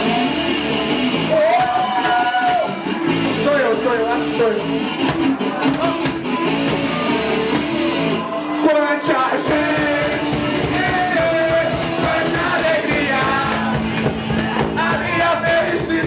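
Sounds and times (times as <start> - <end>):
drums: 0.0 - 8.3, 9.0 - 16.0
bass: 0.0 - 8.4, 9.4 - 16.0
electric guitar: 0.0 - 16.0
person singing: 8.5 - 16.0.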